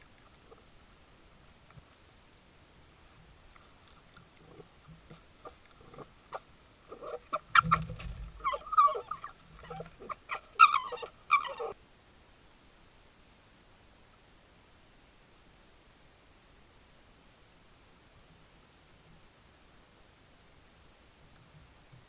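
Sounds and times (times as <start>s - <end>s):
fox calls and clicks: 3.5s - 11.8s.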